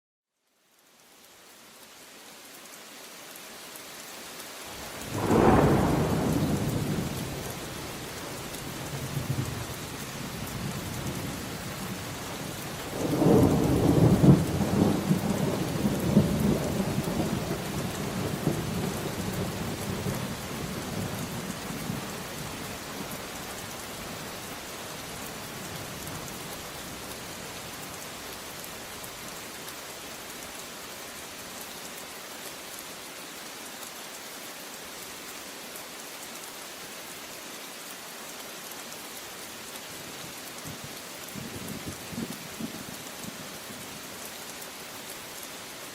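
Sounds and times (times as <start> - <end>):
steady rain: 0.3 - 45.9
rolling thunder: 5.1 - 7.4
thunderclap: 5.2 - 6.7.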